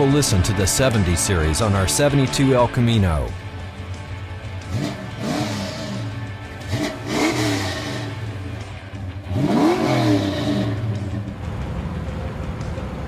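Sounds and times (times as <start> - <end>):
engine revving from idle: 4.6 - 13.0.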